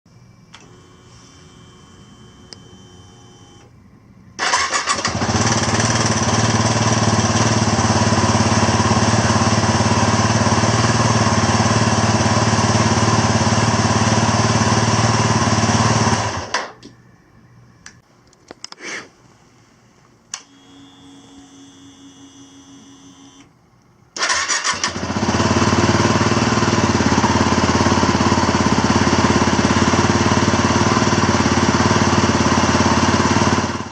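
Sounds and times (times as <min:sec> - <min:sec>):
electric starter cranking: 0:04.4 - 0:09.2, 0:24.2 - 0:27.1.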